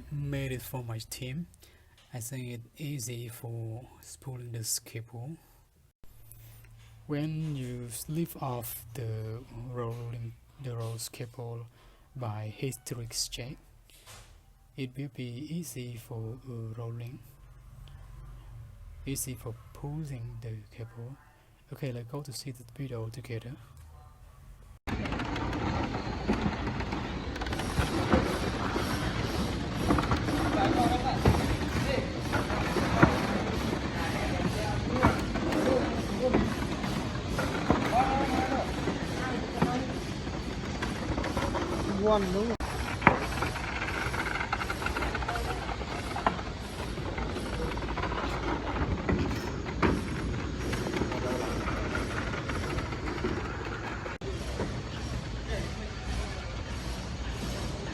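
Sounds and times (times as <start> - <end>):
cable drum rattling: 24.9 - 55.6
workers' voices: 24.9 - 57.9.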